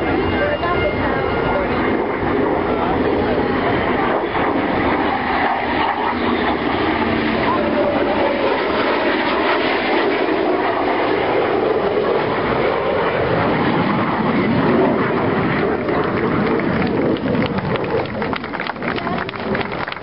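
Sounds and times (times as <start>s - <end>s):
military jet flyby: 0.0s - 20.0s.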